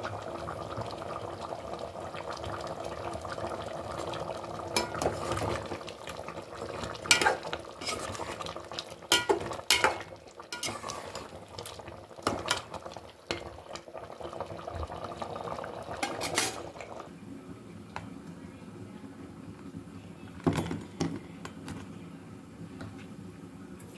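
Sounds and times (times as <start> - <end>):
frying sizzle: 0.0 - 17.1
metal utensil scraping pan: 4.8 - 5.6, 7.1 - 8.5, 9.1 - 11.3, 16.0 - 16.7
utensil clinking against pan: 9.1 - 10.8.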